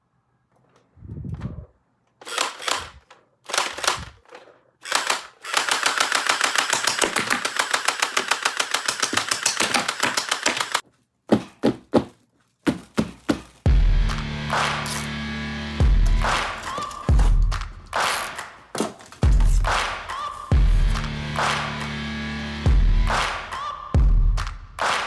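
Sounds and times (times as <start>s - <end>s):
rapid plastic clicks: 2.2s - 10.8s
plastic packaging rustles: 10.8s - 13.7s, 16.6s - 17.4s.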